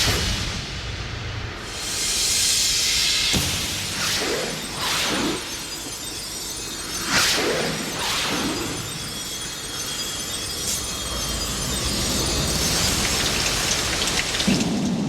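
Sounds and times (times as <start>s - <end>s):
noisy hiss: 0.0s - 6.9s.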